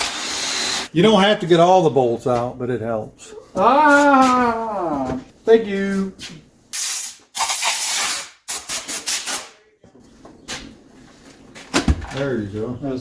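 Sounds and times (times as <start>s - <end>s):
hissing bursts: 0.0s - 0.9s, 6.7s - 9.6s.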